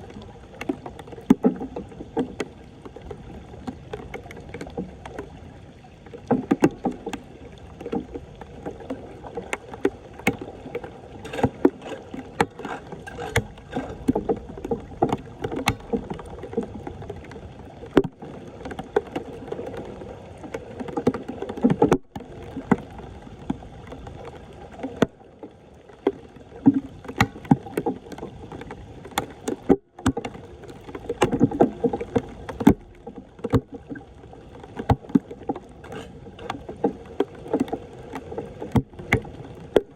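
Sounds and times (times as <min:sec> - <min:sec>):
floodwater splashing: 0:00.0 - 0:39.9
sharp knocks and clatters: 0:11.2 - 0:14.4.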